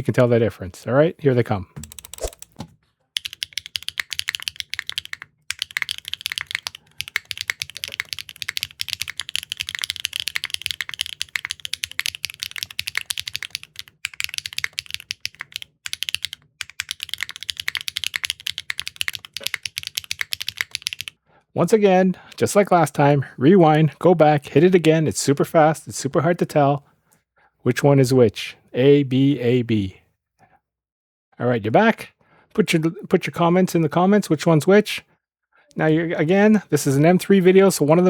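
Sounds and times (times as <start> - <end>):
fast typing on mechanical keyboard: 1.8 - 2.6, 3.2 - 21.1.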